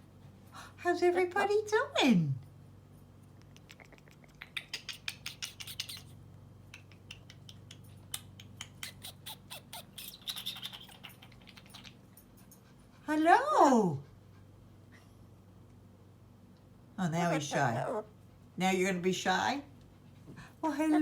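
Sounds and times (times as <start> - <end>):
parrot clicking and chattering: 3.3 - 12.3
parrot chirps: 3.4 - 12.0.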